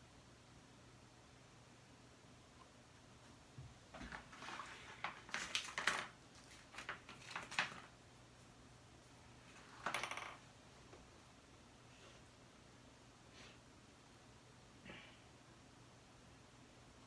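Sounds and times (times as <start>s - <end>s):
plastic backing rustling and crinkling: 3.9s - 8.0s.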